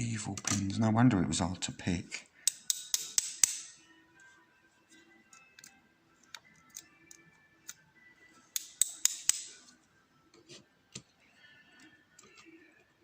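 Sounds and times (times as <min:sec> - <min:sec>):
metal lock pins clicking: 0:02.5 - 0:03.7, 0:08.6 - 0:09.5.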